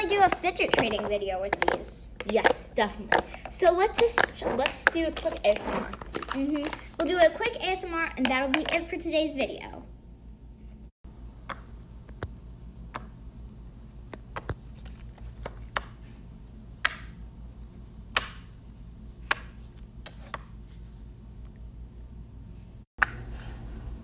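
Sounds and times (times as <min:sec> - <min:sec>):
fidget toy popping: 0:00.0 - 0:05.0.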